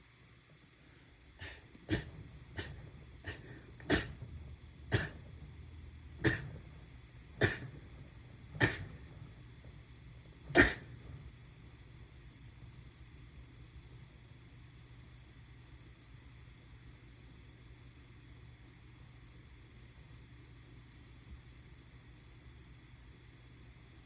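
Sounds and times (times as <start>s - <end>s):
short sharp sneezes: 8.6s - 9.0s, 10.6s - 10.9s.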